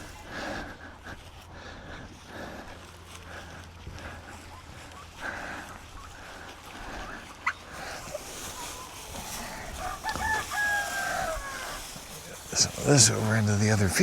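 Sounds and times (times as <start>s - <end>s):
poultry calling: 1.6s - 14.0s.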